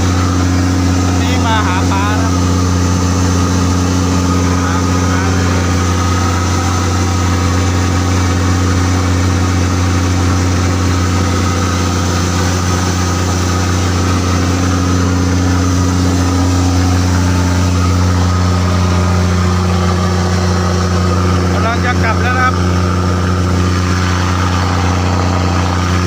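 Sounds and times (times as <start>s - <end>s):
boat engine running: 0.0s - 26.0s.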